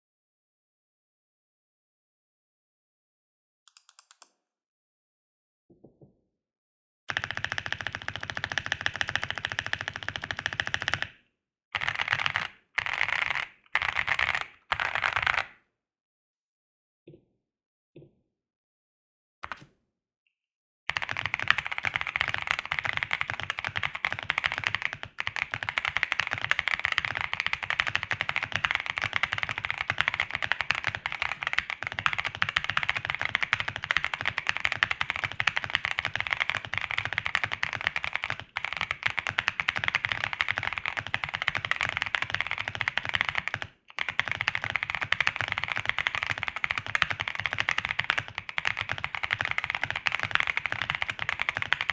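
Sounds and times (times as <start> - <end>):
mechanical keyboard typing: 7.1 - 11.1, 11.8 - 15.5, 20.9 - 51.9.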